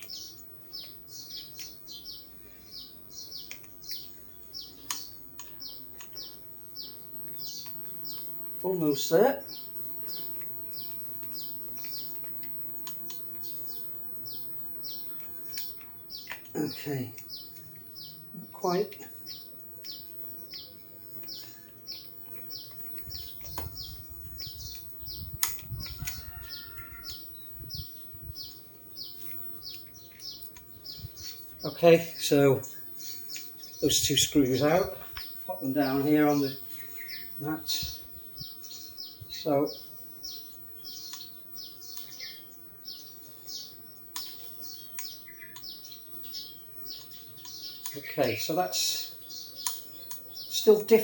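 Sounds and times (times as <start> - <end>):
small bird chirping: 0.0 - 51.0
sharp clicks: 3.2 - 6.4, 9.8 - 18.1, 18.9 - 27.3, 29.2 - 31.0, 40.9 - 42.2, 44.1 - 45.8, 46.9 - 48.1, 49.4 - 50.6.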